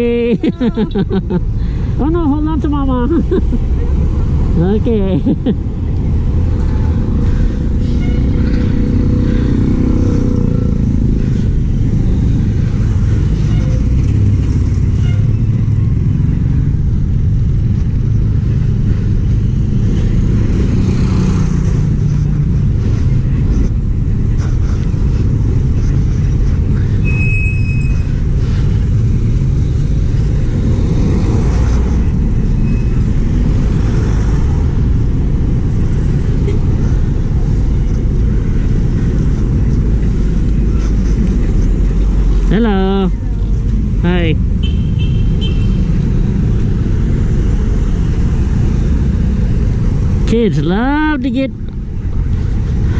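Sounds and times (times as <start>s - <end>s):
road traffic rumble: 0.0s - 52.9s
high-pitched beep: 27.1s - 28.0s.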